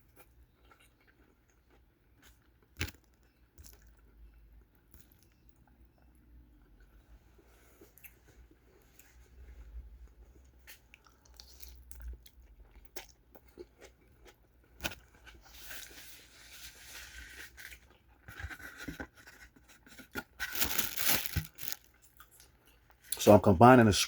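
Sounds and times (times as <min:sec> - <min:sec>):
packaging rustling: 0:20.4 - 0:21.9.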